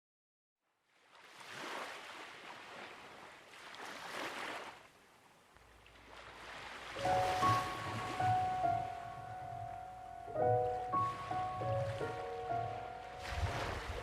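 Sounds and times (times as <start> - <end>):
ocean waves washing in: 1.0 - 5.0, 5.7 - 14.0
solo piano notes: 7.0 - 14.0.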